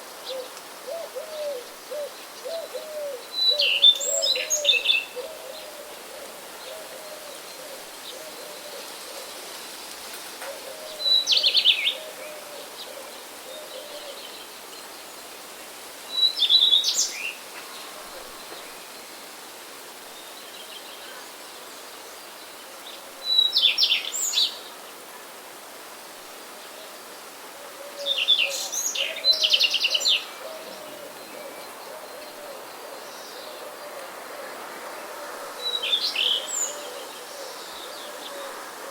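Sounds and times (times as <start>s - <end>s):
low cooing call: 0.2s - 9.4s, 10.4s - 14.4s, 27.5s - 38.9s.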